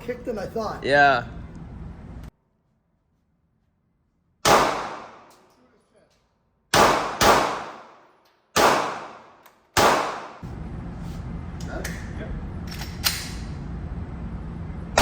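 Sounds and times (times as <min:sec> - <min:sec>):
gunshots: 0:04.4 - 0:05.3, 0:06.7 - 0:08.0, 0:08.6 - 0:10.4.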